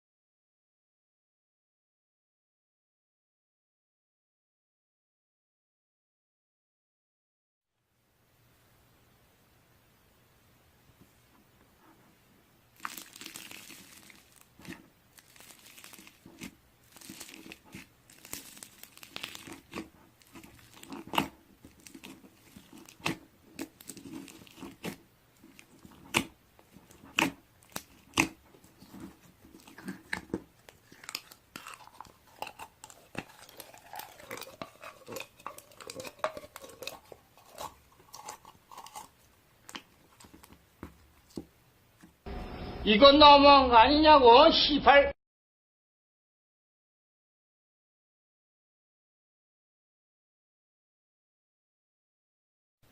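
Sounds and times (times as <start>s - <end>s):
crinkling and crunching: 12.7s - 42.1s.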